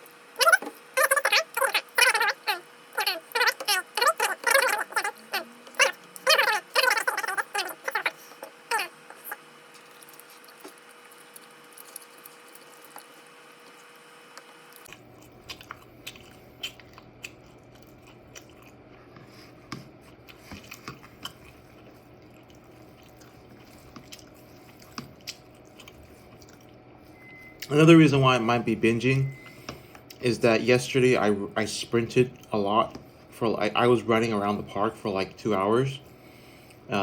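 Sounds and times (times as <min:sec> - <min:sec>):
person chewing: 0:00.0 - 0:14.0, 0:14.7 - 0:26.8.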